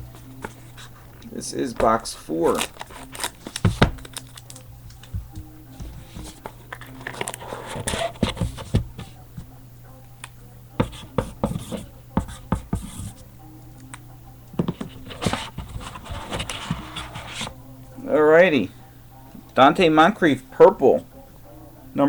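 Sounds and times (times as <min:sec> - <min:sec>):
cardboard and cards handled: 0:00.0 - 0:09.5, 0:14.6 - 0:17.6
steady low hum: 0:00.0 - 0:22.0.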